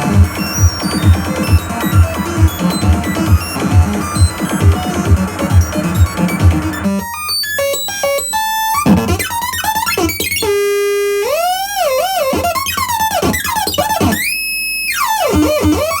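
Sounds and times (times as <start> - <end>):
low drum beat: 0.0 - 6.9
synth lead with pitch bends: 0.0 - 7.2.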